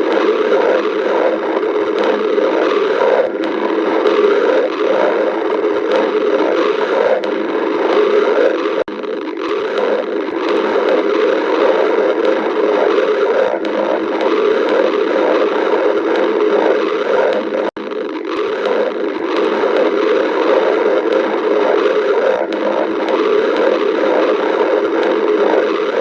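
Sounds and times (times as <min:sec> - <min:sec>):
stomach growling: 0:00.0 - 0:26.0.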